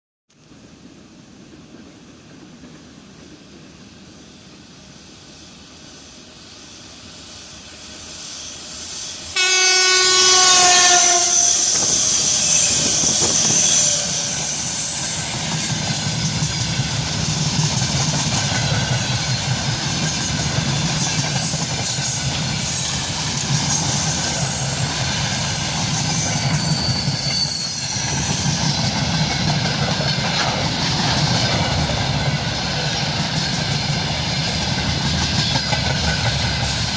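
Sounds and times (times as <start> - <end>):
electric locomotive rumbling past: 0.6 - 36.9
locomotive horn: 9.3 - 14.4
freight wagons rolling on rails: 11.3 - 36.9.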